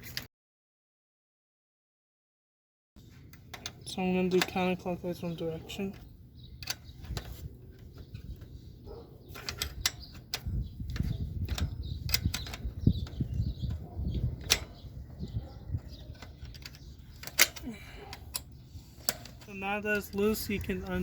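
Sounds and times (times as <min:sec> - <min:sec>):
wrench clicking on metal: 0:09.4 - 0:14.8, 0:15.8 - 0:21.0.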